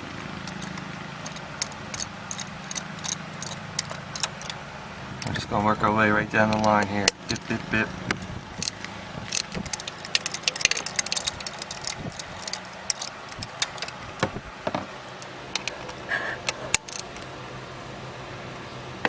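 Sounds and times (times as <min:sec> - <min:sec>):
hand ratchet clicking: 0:00.4 - 0:04.6, 0:06.4 - 0:14.2, 0:15.2 - 0:17.3
metal socket clinks: 0:00.4 - 0:04.6, 0:08.6 - 0:14.1, 0:15.5 - 0:17.3.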